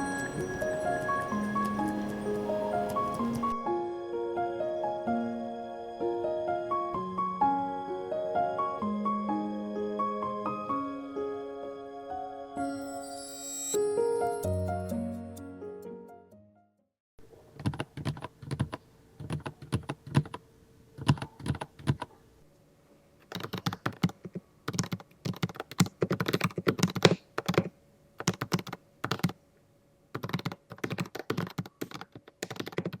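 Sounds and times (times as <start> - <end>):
mechanical keyboard typing: 17.6 - 20.4, 21.0 - 22.1, 23.3 - 29.4, 30.1 - 33.0.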